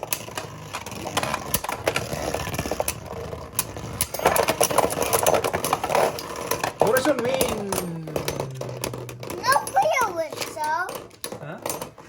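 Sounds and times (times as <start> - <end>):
spinning tops whirring and rattling: 0.0 - 12.0
spinning tops clacking together: 3.6 - 12.0.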